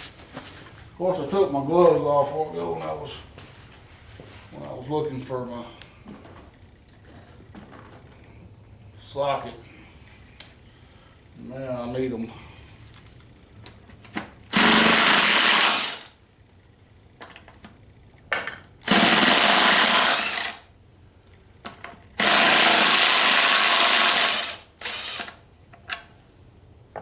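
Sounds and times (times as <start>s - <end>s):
power wrench spinning: 14.4s - 16.2s, 18.8s - 20.7s, 22.1s - 25.5s.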